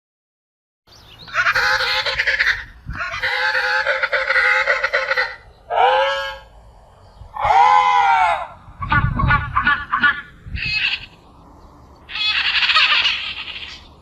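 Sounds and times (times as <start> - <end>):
penguin braying calls: 1.3 - 6.5, 7.4 - 11.2, 12.1 - 13.9.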